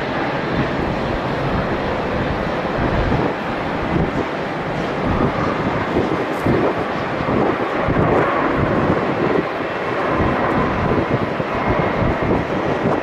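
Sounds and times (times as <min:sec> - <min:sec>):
jet engines roaring: 0:00.0 - 0:13.0
wind buffeting microphone: 0:00.0 - 0:13.0.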